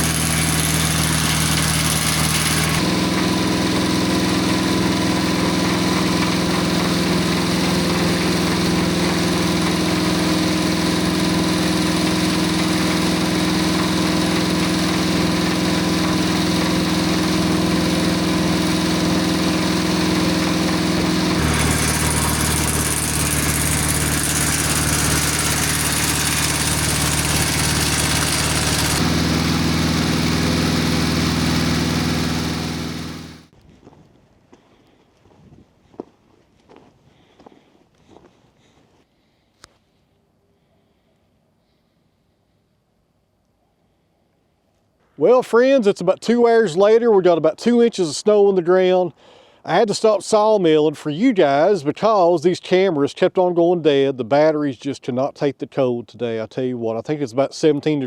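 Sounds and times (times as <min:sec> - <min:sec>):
circular saw blade cutting log: 0:00.0 - 0:33.5
gas engine running: 0:00.0 - 0:33.5.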